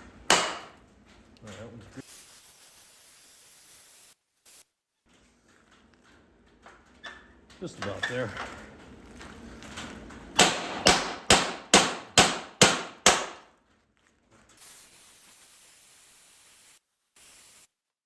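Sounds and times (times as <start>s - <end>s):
faint hiss: 2.0s - 4.7s, 14.6s - 17.8s.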